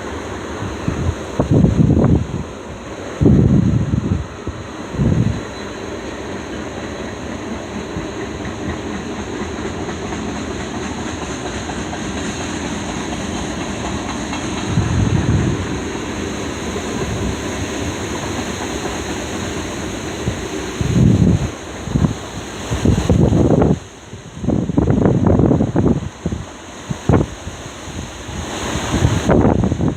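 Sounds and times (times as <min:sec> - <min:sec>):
wind hitting microphone: 0:00.0 - 0:05.6, 0:07.8 - 0:29.9
freight train wheels on rails: 0:00.0 - 0:29.9.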